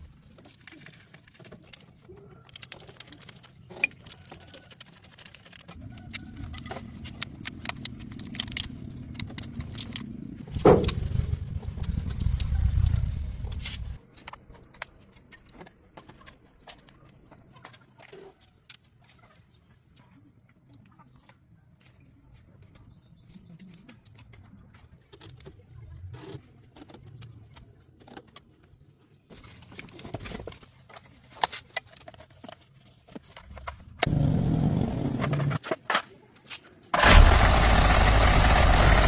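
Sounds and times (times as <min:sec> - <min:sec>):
car engine starting and running: 0:37.0 - 0:39.0.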